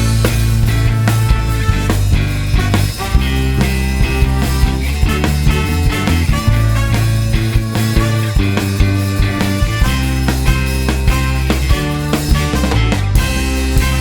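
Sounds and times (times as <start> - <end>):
loud rock music: 0.0 - 14.0.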